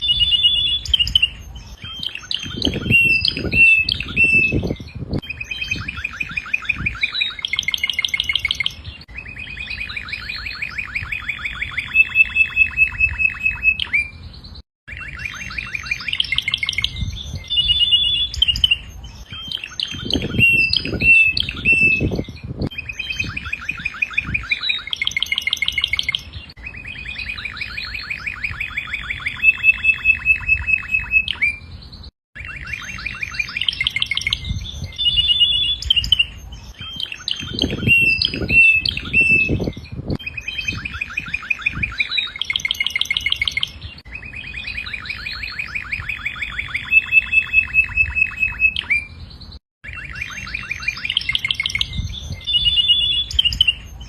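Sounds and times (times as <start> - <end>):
canary singing trills: 0.0 - 54.0.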